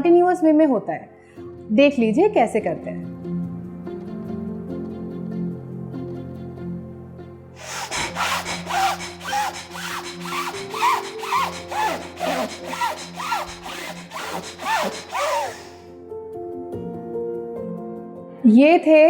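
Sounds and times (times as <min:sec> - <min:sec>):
soft background music: 0:00.0 - 0:07.6, 0:14.1 - 0:19.0
forceful rhythmic nose breathing: 0:07.6 - 0:15.9.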